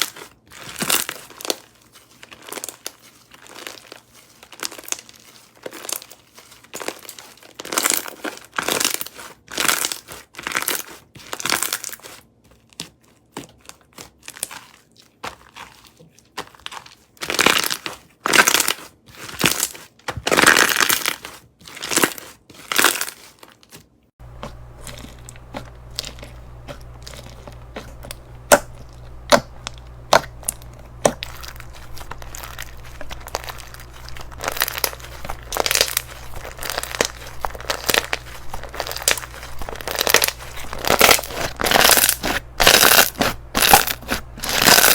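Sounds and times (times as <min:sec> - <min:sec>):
crunchy slime being squeezed: 0:02.3 - 0:12.0, 0:16.6 - 0:23.2, 0:24.2 - 0:44.9
steady low hum: 0:24.2 - 0:44.9.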